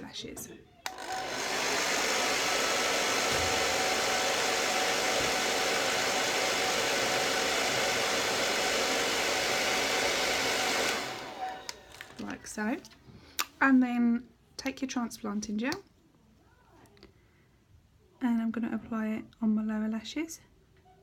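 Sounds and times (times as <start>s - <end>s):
hair dryer running: 0.9s - 12.4s.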